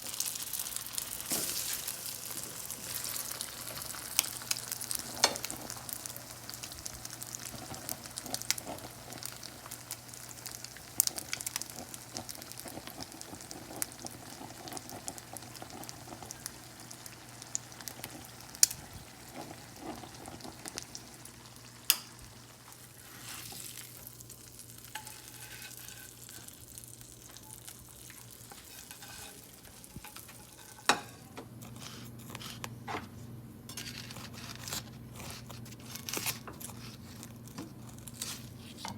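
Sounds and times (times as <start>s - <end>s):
hot oil sizzling and crackling: 0.0s - 32.8s, 33.6s - 38.9s.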